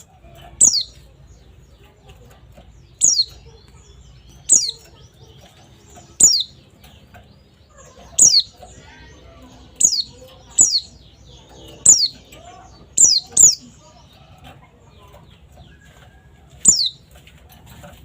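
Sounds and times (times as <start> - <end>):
bird chirps sliding down: 2.9 - 3.3, 9.7 - 12.2, 16.6 - 17.0.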